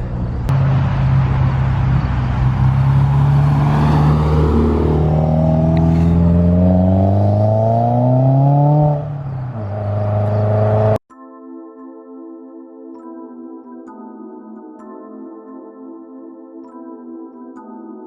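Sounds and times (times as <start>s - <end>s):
car engine accelerating: 0.0s - 11.0s
soft music: 11.1s - 18.0s.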